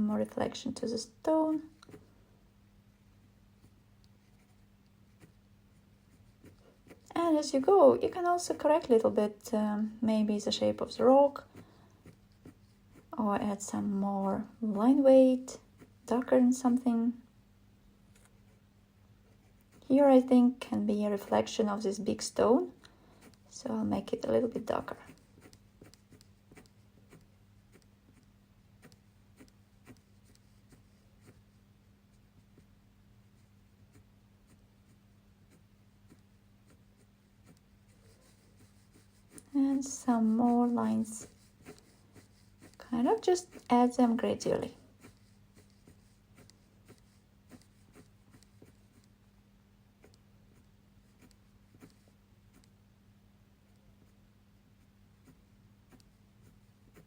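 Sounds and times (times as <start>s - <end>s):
faint low hum: 0.0s - 57.0s
pen scratching on paper: 3.6s - 9.0s, 10.6s - 13.2s, 14.9s - 16.8s, 19.3s - 20.4s, 23.2s - 32.7s, 33.4s - 49.2s, 50.0s - 52.8s, 55.2s - 57.0s.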